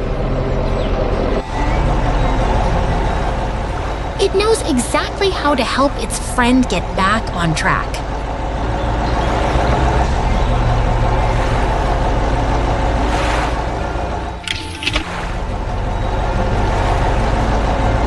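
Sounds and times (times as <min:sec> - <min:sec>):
background music: 0:00.0 - 0:18.0
machine engine low rumble: 0:00.0 - 0:18.0.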